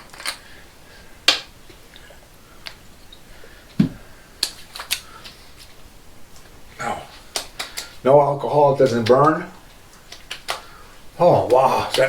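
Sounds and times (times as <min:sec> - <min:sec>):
hands patting face: 0:03.7 - 0:05.7, 0:07.0 - 0:08.0.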